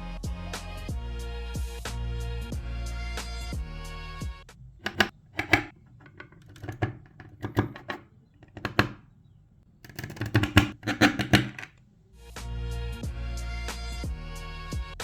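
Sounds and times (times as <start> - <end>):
plastic parts clicking and rattling: 4.8 - 9.0, 9.9 - 11.8.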